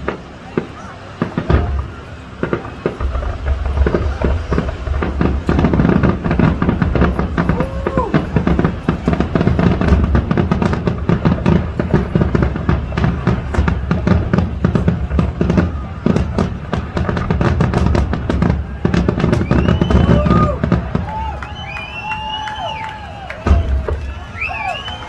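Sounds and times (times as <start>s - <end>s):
fireworks bangs and crackles: 0.0s - 25.0s
deep rumble: 3.0s - 20.9s.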